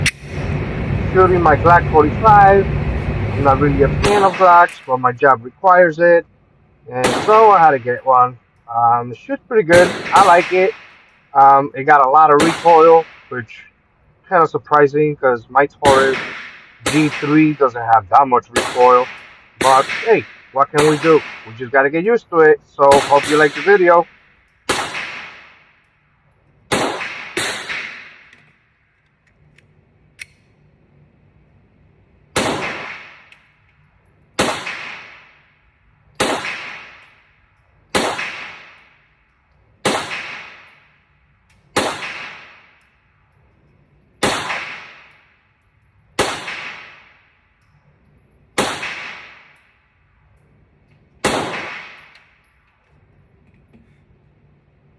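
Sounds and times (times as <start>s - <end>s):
pistol shots echoing: 4.0s - 5.0s, 7.0s - 8.0s, 9.7s - 11.0s, 12.3s - 13.3s, 15.8s - 17.6s, 18.5s - 21.7s, 22.8s - 24.0s, 24.7s - 25.7s, 26.7s - 28.4s, 32.4s - 33.4s, 34.4s - 35.4s, 36.1s - 37.2s, 37.9s - 39.0s, 39.8s - 40.9s, 41.8s - 42.8s, 44.2s - 45.2s, 46.2s - 47.1s, 48.6s - 49.6s, 51.2s - 52.4s.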